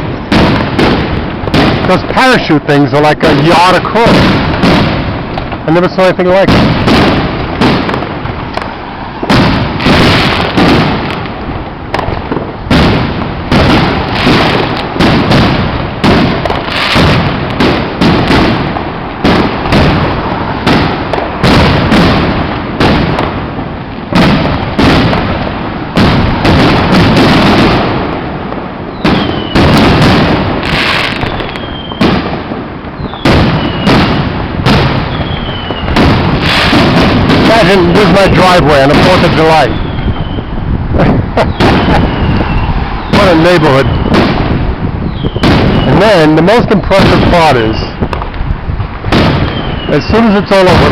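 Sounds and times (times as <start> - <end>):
fireworks banging and crackling: 0.0 - 50.9
falling firework whistles: 28.8 - 37.4, 39.4 - 40.7, 41.3 - 46.1, 49.2 - 50.3.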